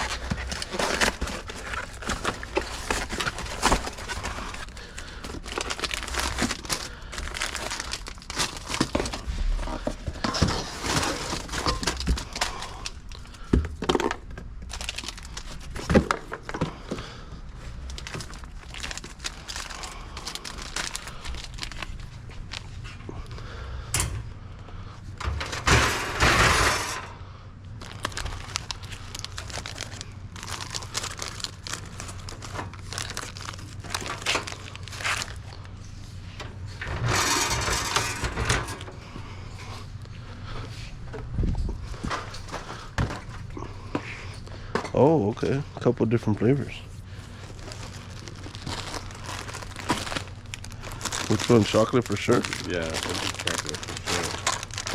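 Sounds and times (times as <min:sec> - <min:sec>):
plastic packaging crinkling: 0:00.0 - 0:17.0, 0:17.6 - 0:22.9, 0:27.8 - 0:35.8, 0:46.4 - 0:54.9
items being set down: 0:08.5 - 0:12.6, 0:25.2 - 0:27.1, 0:36.4 - 0:39.0, 0:42.0 - 0:44.1.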